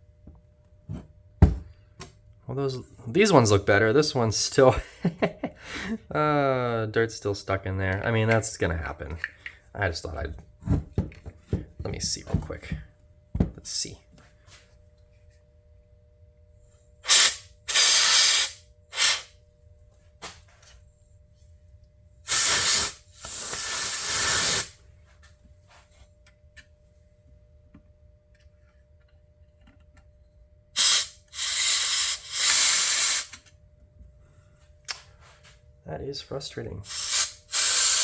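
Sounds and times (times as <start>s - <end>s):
compressed air blasts hissing: 17.0s - 19.3s, 22.3s - 24.8s, 30.8s - 33.4s, 36.9s - 38.0s.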